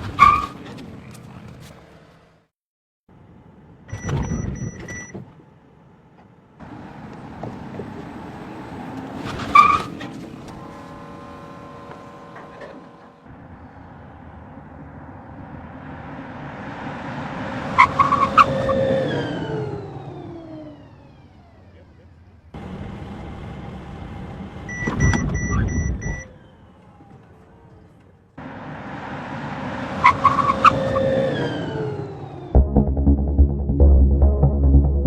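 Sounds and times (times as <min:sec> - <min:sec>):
steady vehicle noise: 0:00.0 - 0:02.5, 0:03.1 - 0:35.0.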